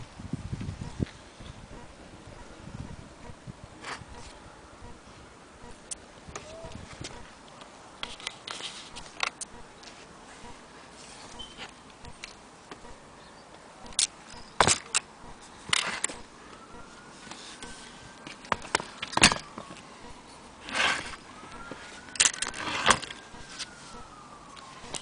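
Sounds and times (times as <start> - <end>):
faint wailing tone: 1.6 - 7.4, 16.1 - 25.0.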